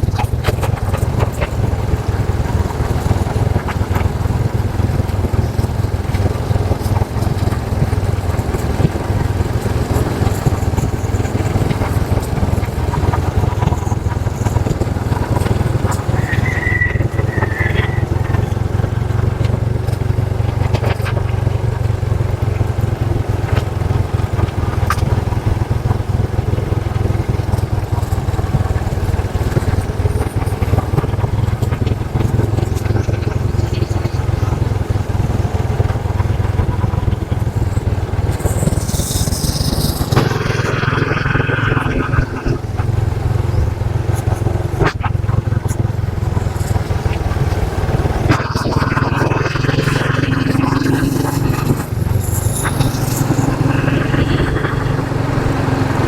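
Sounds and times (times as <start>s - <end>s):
motorcycle engine rumble: 0.0s - 56.0s
high chirps: 15.9s - 18.7s.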